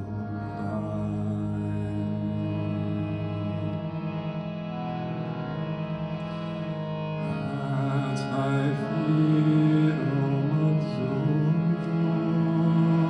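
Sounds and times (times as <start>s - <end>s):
person singing or chanting: 0.0s - 3.3s, 7.2s - 13.0s
steady held drone: 0.0s - 13.0s.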